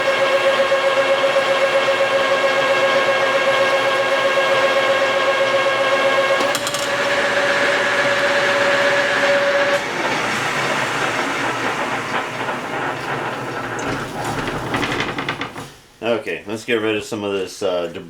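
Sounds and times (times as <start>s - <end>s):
lathe cutting whine: 0.0s - 14.4s
lathe ticks and rattles: 10.0s - 15.8s.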